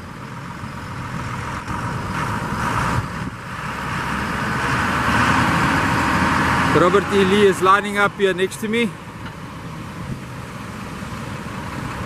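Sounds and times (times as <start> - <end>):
tractor engine running: 0.0 - 12.0.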